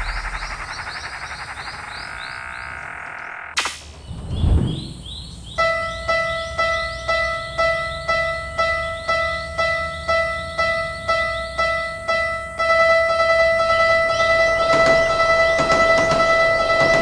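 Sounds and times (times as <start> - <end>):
continuous steady tone: 5.5 - 17.0.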